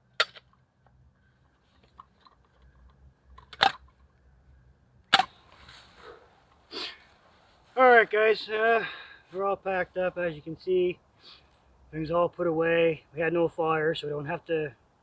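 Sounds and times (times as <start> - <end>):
soft rustle: 5.3 - 10.3.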